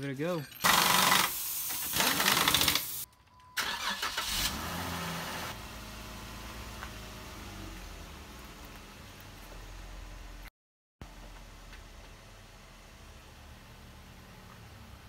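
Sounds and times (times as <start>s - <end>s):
car engine starting and running: 3.6s - 15.0s.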